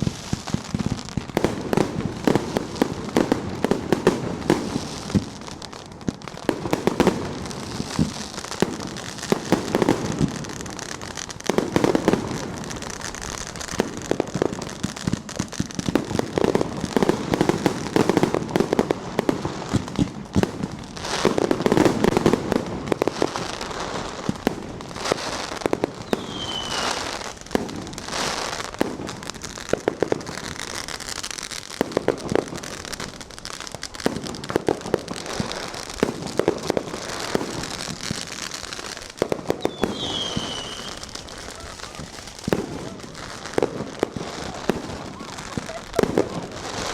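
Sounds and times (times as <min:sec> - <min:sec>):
fireworks and firecrackers banging: 0:00.0 - 0:46.9
firework whistle: 0:25.0 - 0:28.9, 0:35.2 - 0:46.9.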